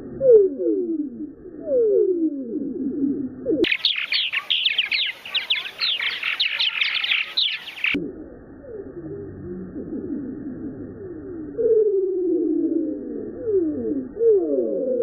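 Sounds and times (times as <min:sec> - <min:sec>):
birds calling: 0:03.6 - 0:08.0.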